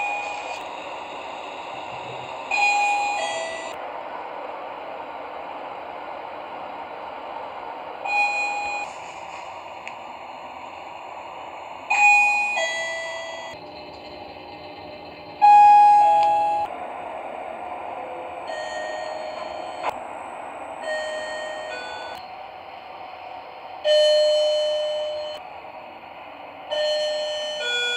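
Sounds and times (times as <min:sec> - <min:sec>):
steady background noise: 0:00.0 - 0:27.9
elevator chime ding: 0:08.1 - 0:08.8, 0:11.9 - 0:13.6, 0:15.4 - 0:16.7, 0:18.5 - 0:19.9, 0:20.8 - 0:22.2, 0:23.8 - 0:25.4, 0:26.7 - 0:27.9.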